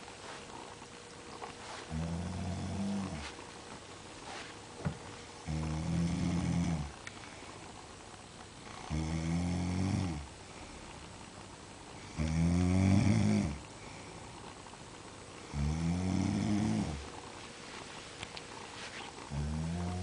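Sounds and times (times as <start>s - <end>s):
low snores: 1.8s - 3.3s, 5.4s - 6.9s, 8.6s - 10.3s, 12.1s - 13.6s, 15.5s - 17.1s, 19.3s - 20.0s.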